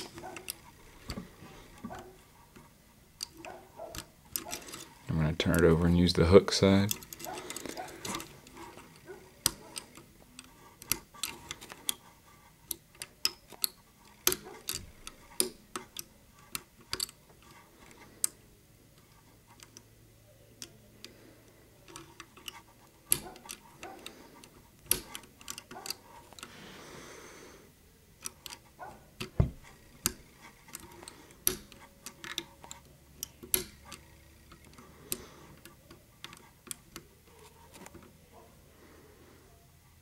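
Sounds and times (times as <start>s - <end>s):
lock pick clicking in lock: 12.7s - 17.2s, 21.9s - 26.5s, 29.2s - 37.1s.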